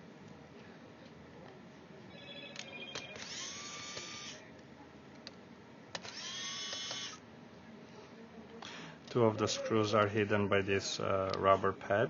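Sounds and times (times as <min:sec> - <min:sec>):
electric screwdriver whining: 0:03.2 - 0:04.4, 0:06.0 - 0:07.2.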